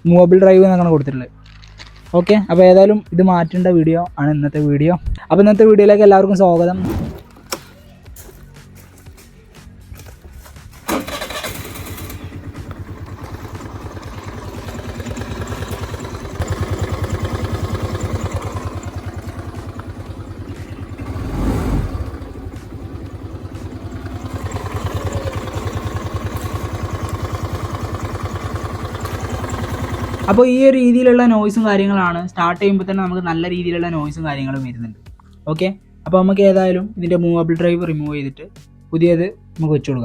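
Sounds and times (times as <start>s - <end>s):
scooter engine idling: 7.2s - 30.6s
small engine knock: 10.8s - 21.1s, 22.4s - 30.4s.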